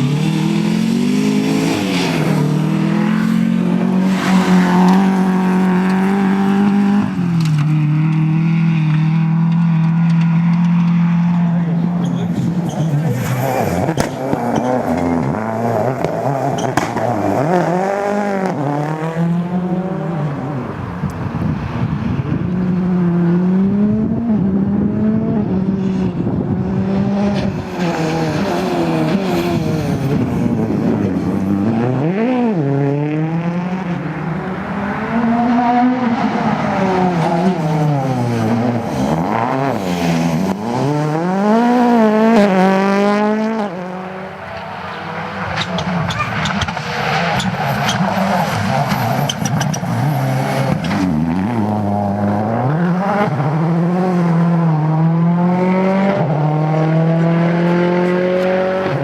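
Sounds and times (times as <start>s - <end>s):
rally car engines revving: 0.0s - 59.0s
tyre squeal: 12.0s - 13.8s, 44.6s - 50.3s.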